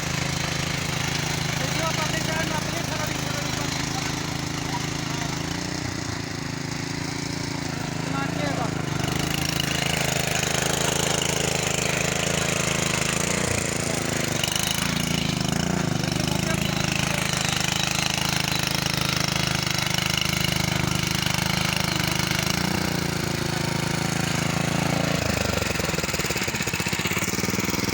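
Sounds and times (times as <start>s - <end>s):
hoeing machine engine running: 0.0s - 27.9s.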